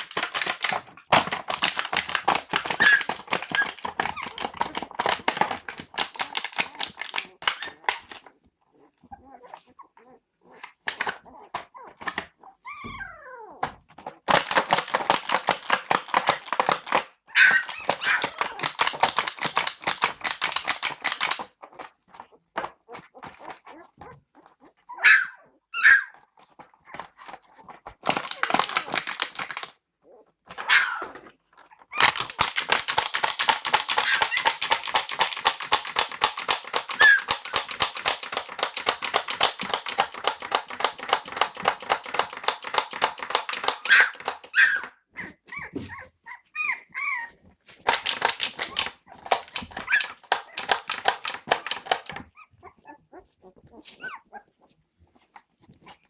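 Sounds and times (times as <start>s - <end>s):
puppies whimpering and yelping: 2.7s - 4.4s, 7.4s - 13.6s, 17.3s - 18.6s, 22.3s - 27.2s, 30.0s - 32.1s, 36.9s - 37.4s, 43.8s - 47.6s, 49.8s - 50.2s, 52.2s - 56.0s.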